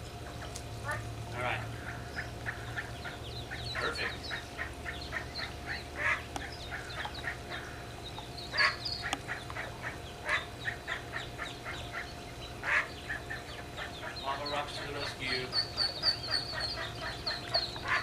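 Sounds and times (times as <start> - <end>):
ducklings peeping: 0.0 - 18.0.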